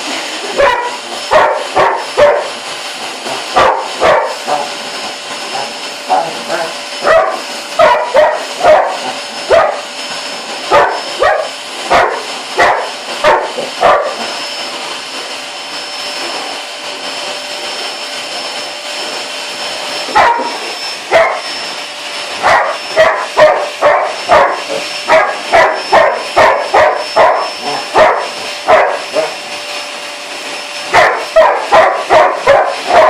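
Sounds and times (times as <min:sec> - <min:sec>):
vacuum cleaner whine: 0:00.0 - 0:33.0
dog barking: 0:00.6 - 0:02.5, 0:03.6 - 0:04.6, 0:07.0 - 0:09.8, 0:10.7 - 0:14.2, 0:20.1 - 0:21.4, 0:22.4 - 0:29.3, 0:30.9 - 0:33.0.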